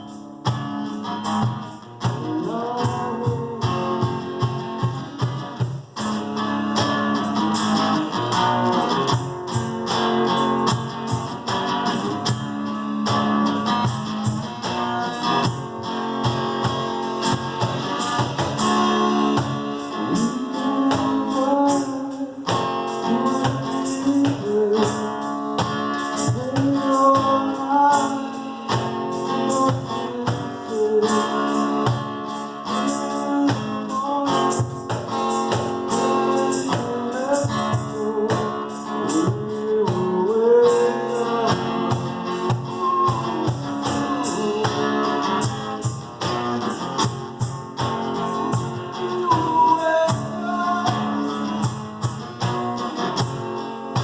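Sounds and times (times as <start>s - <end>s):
percussion beat: 0.0s - 54.0s
strummed acoustic guitar: 0.0s - 54.0s
person singing: 2.0s - 4.4s, 19.0s - 32.0s, 32.7s - 45.9s, 48.6s - 51.8s.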